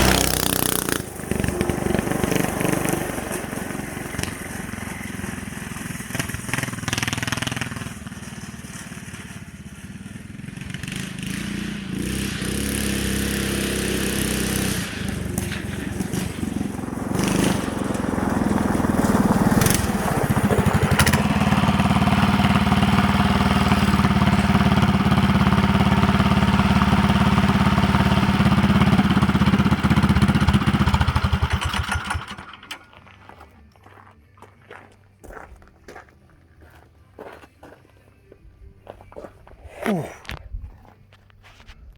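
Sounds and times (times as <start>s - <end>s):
go-kart engine running: 0.0s - 33.5s.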